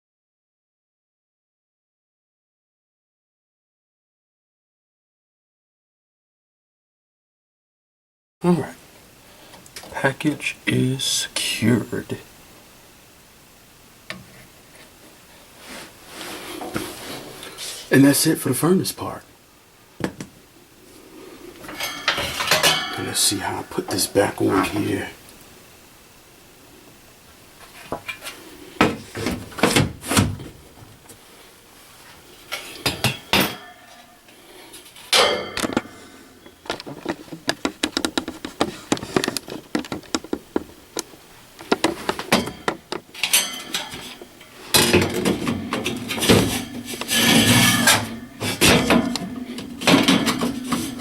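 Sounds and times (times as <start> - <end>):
metal panel knocking and scraping: 44.8 - 51.0.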